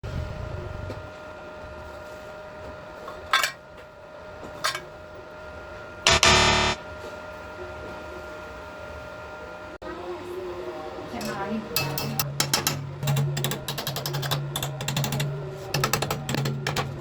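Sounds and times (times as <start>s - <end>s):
harsh noise bursts: 6.1s - 6.8s.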